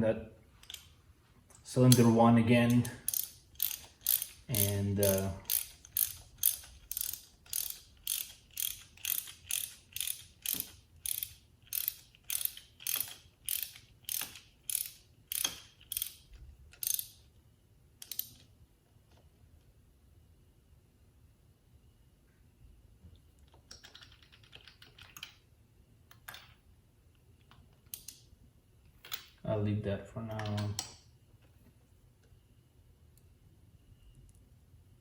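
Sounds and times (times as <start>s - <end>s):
ratchet wrench clicking: 2.7s - 17.2s, 18.0s - 18.4s.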